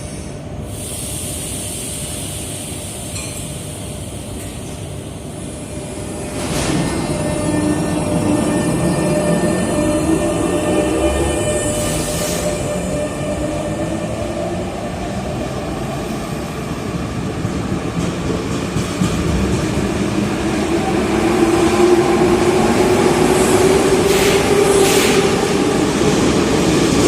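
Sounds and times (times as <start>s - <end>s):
train rumble: 0.0s - 27.0s.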